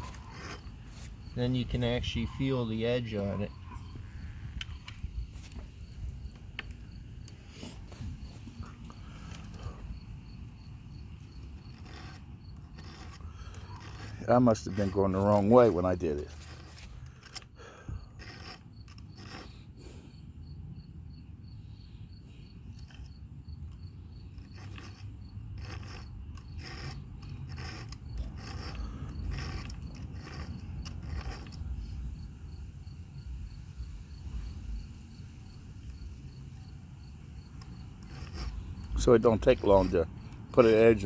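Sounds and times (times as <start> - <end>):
file rasping on chain teeth: 0.0 - 4.2, 11.1 - 20.0, 22.7 - 32.0, 37.4 - 41.0
cricket chirping: 0.0 - 41.0.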